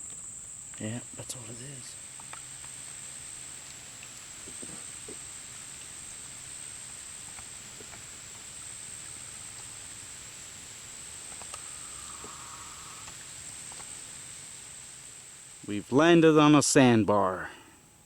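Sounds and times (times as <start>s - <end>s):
insects droning: 0.0s - 18.0s
lower buzzing call: 0.0s - 18.0s
faint clicks: 2.1s - 2.8s, 11.2s - 14.0s.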